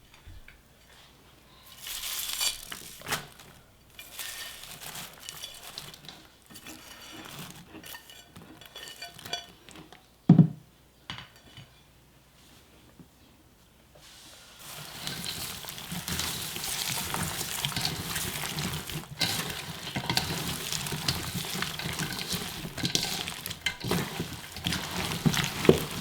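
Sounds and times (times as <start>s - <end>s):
dishes and utensils clinking: 4.0s - 10.0s, 14.6s - 26.0s.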